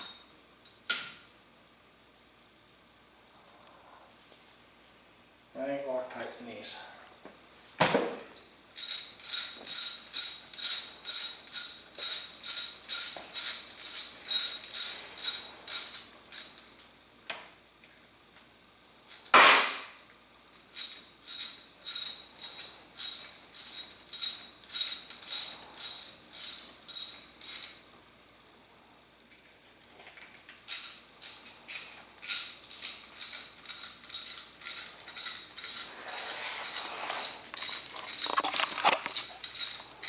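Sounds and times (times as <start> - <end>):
ratchet wrench clicking: 30.7 - 39.9.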